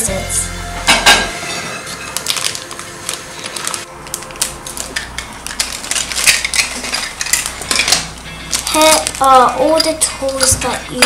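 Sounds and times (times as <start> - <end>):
plastic bag crinkling: 1.8 - 10.6
scissors cutting plastic: 1.9 - 11.0.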